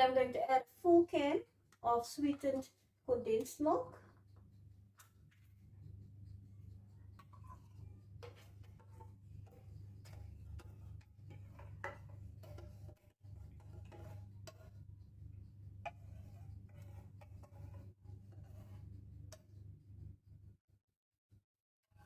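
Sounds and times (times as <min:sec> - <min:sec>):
low steady hum: 0:01.2 - 0:20.5
utensil scraping a tin: 0:06.7 - 0:19.6.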